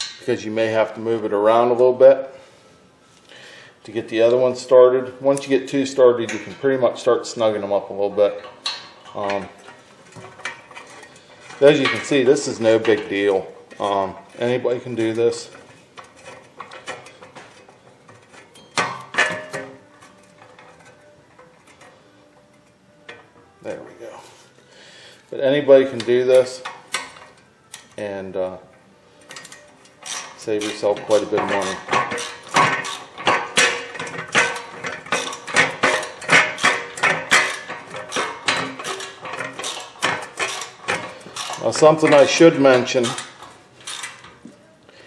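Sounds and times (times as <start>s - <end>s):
metal tools clinking on hub: 5.3s - 23.6s, 29.2s - 44.4s.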